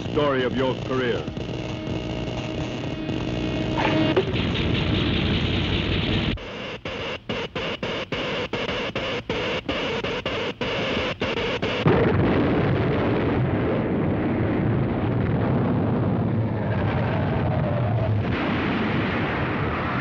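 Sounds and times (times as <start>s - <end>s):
loud earthquake rumble: 11.9s - 20.0s.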